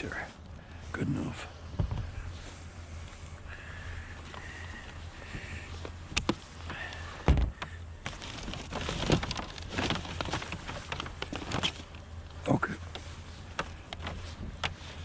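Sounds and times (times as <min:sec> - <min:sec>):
steady low hum: 0:00.0 - 0:15.0
heavy thump: 0:01.7 - 0:02.2, 0:07.2 - 0:07.7.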